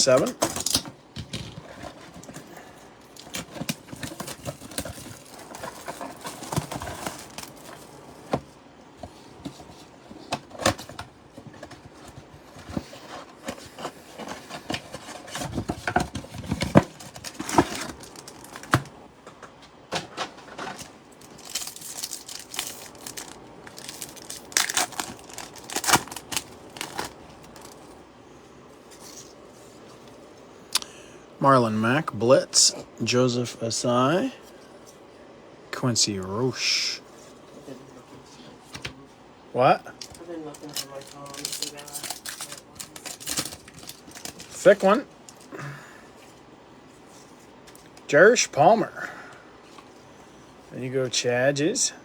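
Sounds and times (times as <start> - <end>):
plastic wrappers crinkling and tearing: 3.1 - 8.0, 14.6 - 18.9, 20.6 - 28.0, 40.0 - 45.5.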